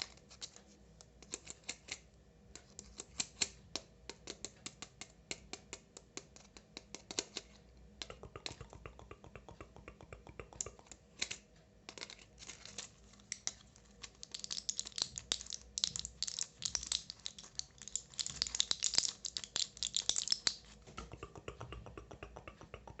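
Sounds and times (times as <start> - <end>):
fingernails tapping fidget toy: 13.4 - 23.0.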